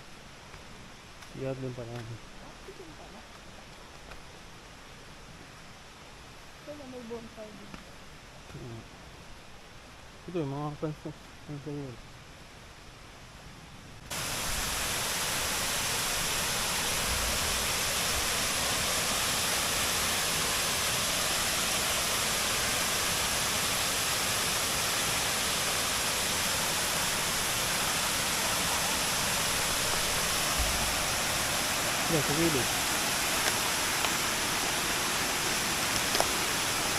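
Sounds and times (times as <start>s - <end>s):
river water rushing: 14.1s - 36.9s.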